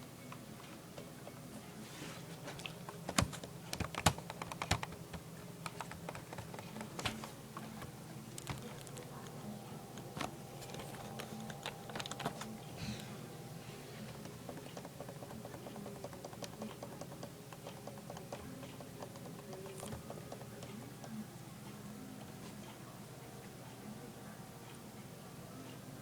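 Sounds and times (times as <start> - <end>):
computer keyboard typing: 2.8 - 12.8, 14.0 - 21.2.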